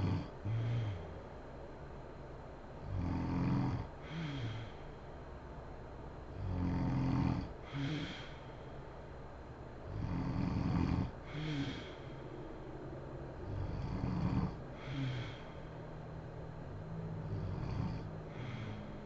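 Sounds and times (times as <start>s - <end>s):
breathy exhale: 0.0s - 1.2s, 4.0s - 5.1s, 7.6s - 9.0s, 11.1s - 16.2s, 17.1s - 19.0s
woman snoring: 0.0s - 1.2s, 2.8s - 4.8s, 6.4s - 8.4s, 9.9s - 12.6s, 13.4s - 16.1s, 16.7s - 19.0s.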